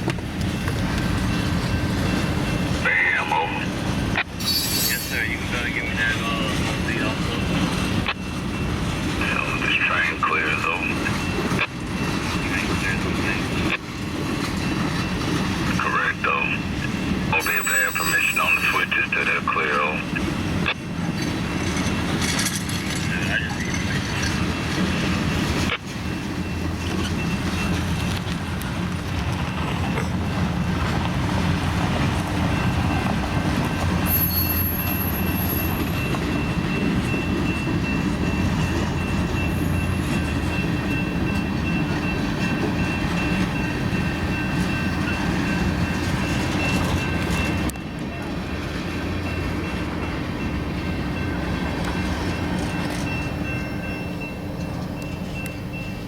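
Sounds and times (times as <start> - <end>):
freight train cars rumbling: 0.0 - 56.0
high wheel squeal: 4.4 - 5.4, 17.3 - 19.0, 34.0 - 37.3.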